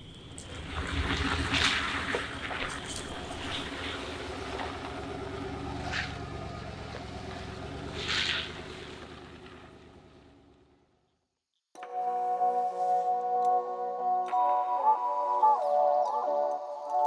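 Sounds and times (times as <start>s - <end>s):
engine running steadily: 0.0s - 10.8s.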